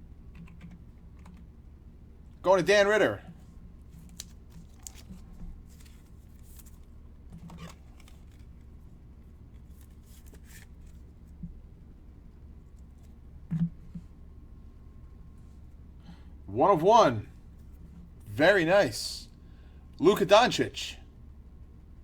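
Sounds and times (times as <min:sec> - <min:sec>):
cards rustling and sliding: 0:03.9 - 0:08.8, 0:09.5 - 0:11.2.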